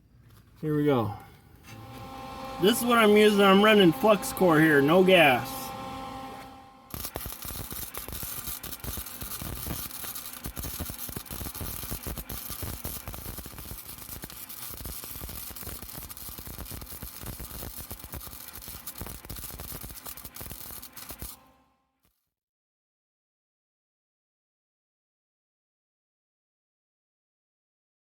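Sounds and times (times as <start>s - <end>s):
welding arc crackling: 1.7s - 21.5s.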